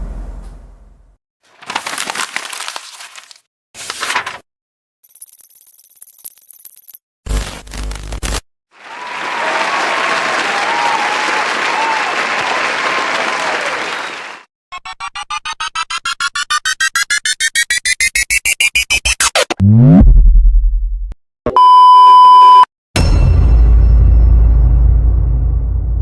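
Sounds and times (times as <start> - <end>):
crowd applause and cheering: 8.8 - 14.5.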